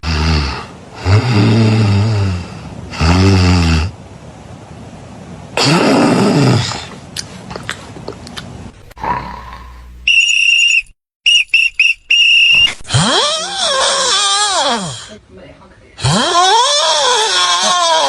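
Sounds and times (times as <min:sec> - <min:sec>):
cartoon snoring: 0:00.0 - 0:04.0, 0:05.6 - 0:07.0, 0:08.9 - 0:09.9, 0:12.9 - 0:15.1, 0:16.0 - 0:18.0.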